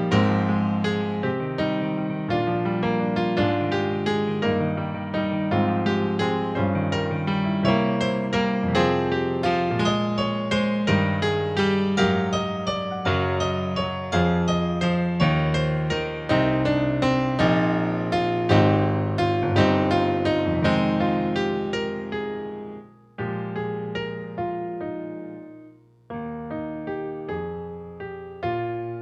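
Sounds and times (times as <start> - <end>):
solo piano piece: 0.0 - 29.0.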